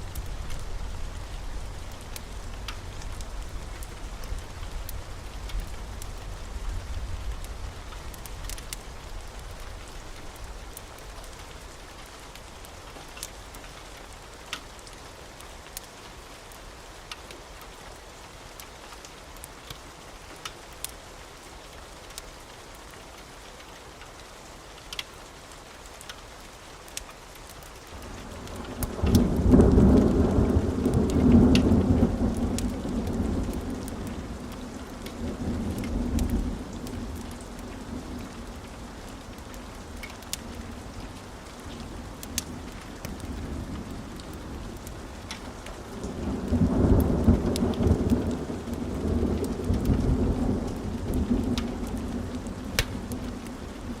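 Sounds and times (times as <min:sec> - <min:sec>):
fire crackling: 0:00.0 - 0:16.0, 0:26.0 - 0:54.0
steady rain: 0:00.0 - 0:54.0
thunder rumble: 0:28.0 - 0:54.0.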